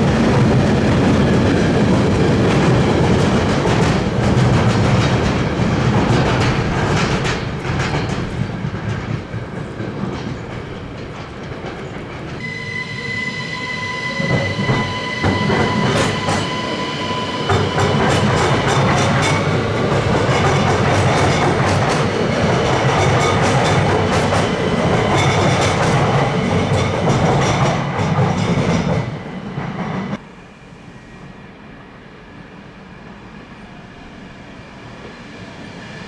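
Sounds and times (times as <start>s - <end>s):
train rumbling: 0.0s - 36.0s
wheels clattering over rail joints: 0.8s - 12.4s.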